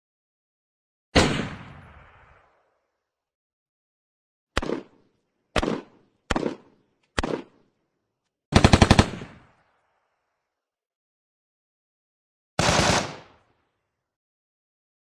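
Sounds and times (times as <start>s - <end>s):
rifle firing bursts: 8.5s - 9.4s, 12.6s - 13.4s.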